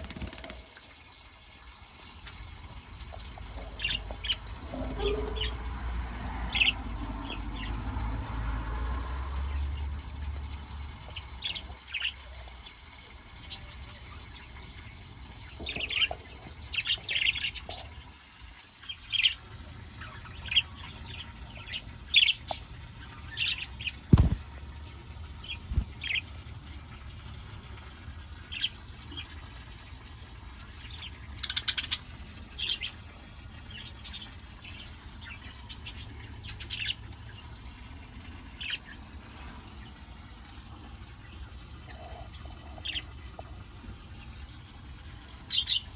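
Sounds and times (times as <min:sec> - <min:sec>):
birds chirping: 0:02.0 - 0:45.9.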